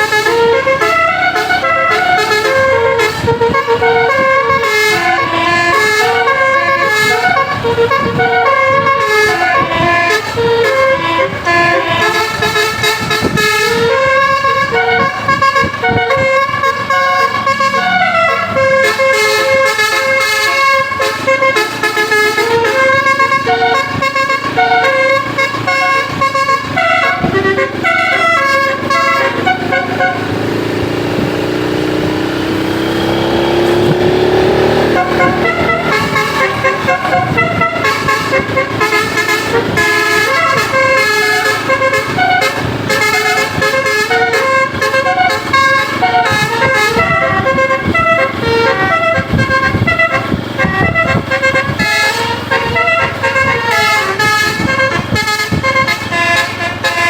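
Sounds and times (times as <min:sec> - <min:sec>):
bus multi-tone horn tune: 0:00.0 - 0:57.0
single rising horn tone: 0:08.2 - 0:49.3.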